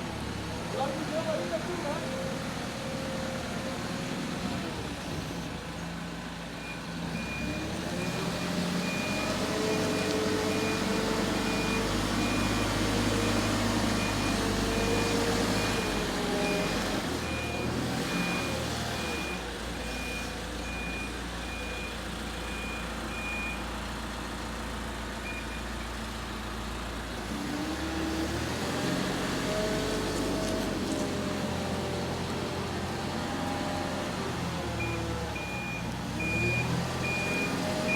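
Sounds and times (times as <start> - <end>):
reversing alarm beeping: 6.6 - 23.6, 34.7 - 37.9.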